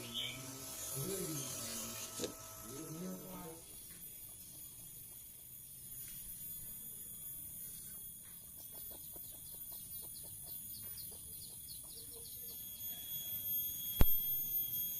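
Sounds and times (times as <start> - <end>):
bird chirping: 0.0 - 1.6, 8.6 - 12.9
high-pitched electrical whine: 0.0 - 9.2, 10.6 - 14.9.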